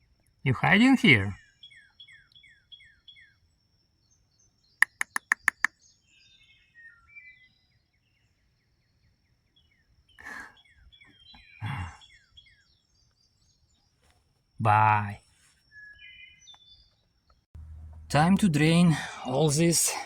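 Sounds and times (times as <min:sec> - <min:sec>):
songbirds chirping: 0:00.0 - 0:20.0
sharp clicks: 0:04.8 - 0:05.7.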